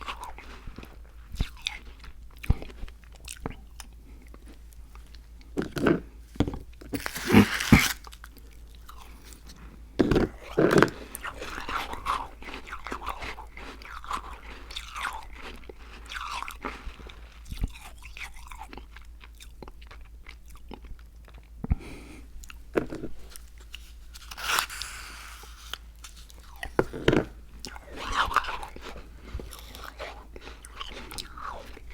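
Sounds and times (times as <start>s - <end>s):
crackly chewing: 0.0s - 31.9s
crunching bites: 5.6s - 9.4s, 23.7s - 31.9s.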